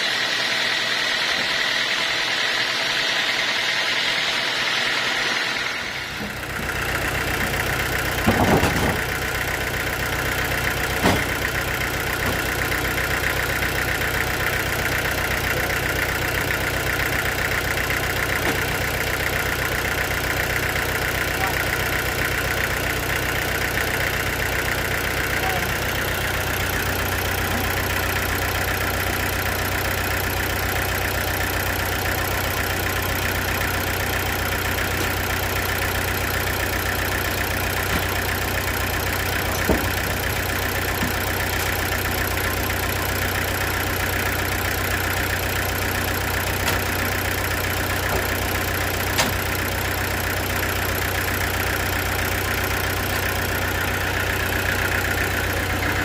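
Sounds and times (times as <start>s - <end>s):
sawmill machinery running: 0.0s - 56.0s
sharp knocks: 8.2s - 9.1s.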